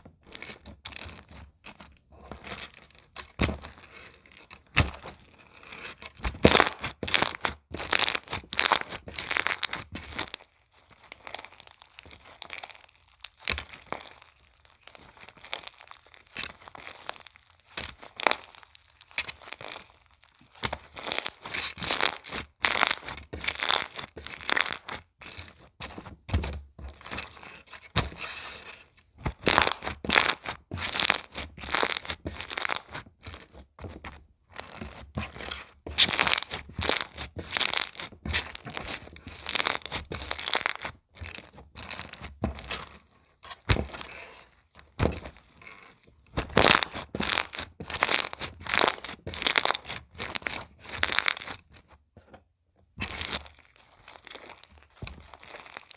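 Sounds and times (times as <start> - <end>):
slime crackling and popping: 6.3 - 25.6, 29.3 - 33.5, 34.6 - 43.0, 46.4 - 51.8, 53.0 - 55.9.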